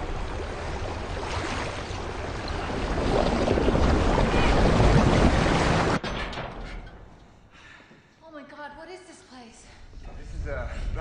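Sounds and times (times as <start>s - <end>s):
rushing water with deep rumble: 0.0s - 6.0s.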